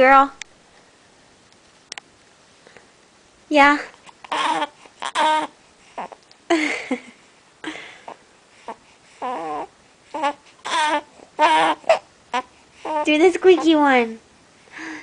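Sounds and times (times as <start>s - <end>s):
baby grunting: 4.2s - 6.2s, 8.7s - 13.1s.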